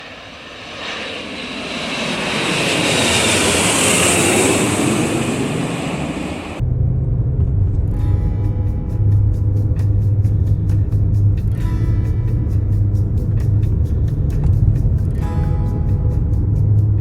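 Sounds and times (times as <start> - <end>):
airplane passing: 0.0 - 7.8, 12.2 - 17.0
instrumental music with bass beat: 7.9 - 17.0.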